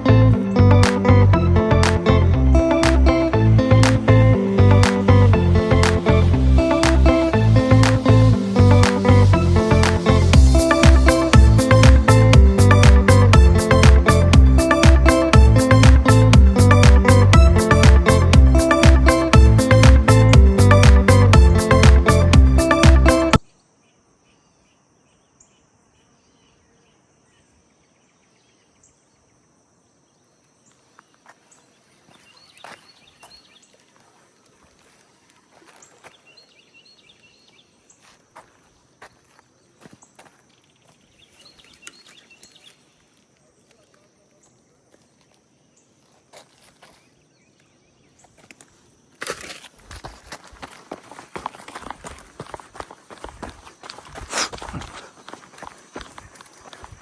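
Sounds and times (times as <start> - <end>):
background music: 0.0 - 23.4
crackling footsteps: 30.7 - 36.5, 37.6 - 57.0.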